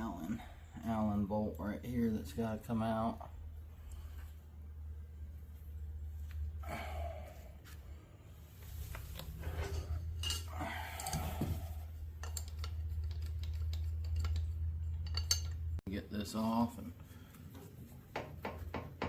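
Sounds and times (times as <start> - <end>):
steady low hum: 0.0 - 19.0
metal tools clinking and scraping: 9.2 - 15.8.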